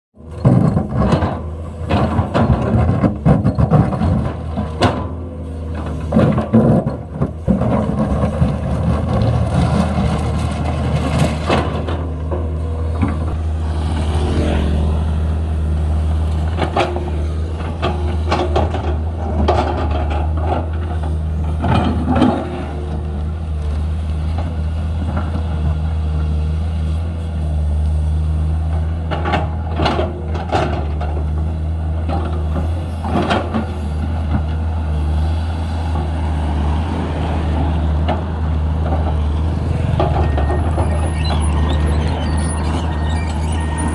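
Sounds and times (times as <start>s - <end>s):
excavator diesel engine running: 0.2s - 43.9s
machine clanks and scraping: 0.3s - 15.1s, 16.1s - 23.1s, 28.7s - 34.6s, 38.8s - 43.9s.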